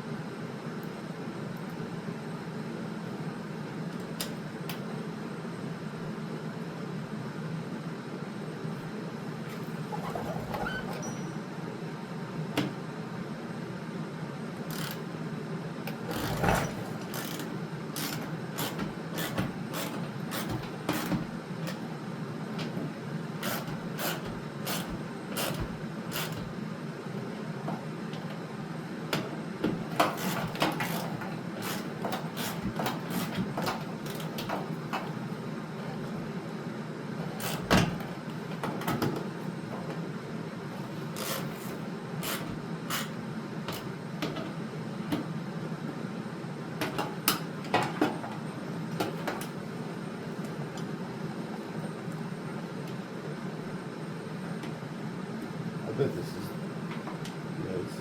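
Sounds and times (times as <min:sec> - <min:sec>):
steady low hum: 0:00.0 - 0:58.0
tools clicking and knocking: 0:16.1 - 0:21.8, 0:23.4 - 0:26.5.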